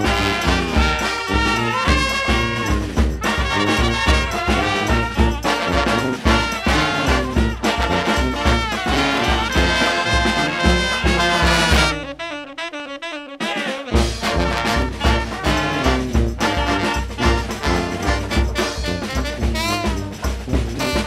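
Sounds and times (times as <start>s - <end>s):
brass band playing swing: 0.0s - 21.0s
low beat: 14.1s - 21.0s.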